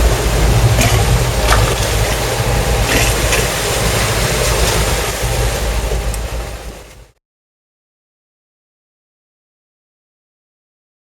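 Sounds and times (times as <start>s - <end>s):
wind and sea rumble: 0.0s - 7.2s.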